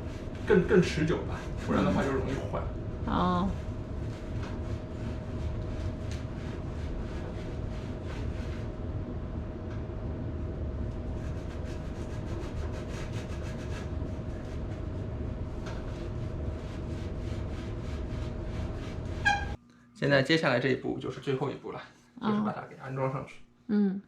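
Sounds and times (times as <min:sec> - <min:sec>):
low hum: 0:00.0 - 0:20.0
tool scraping pipe: 0:01.3 - 0:02.4, 0:15.6 - 0:19.6.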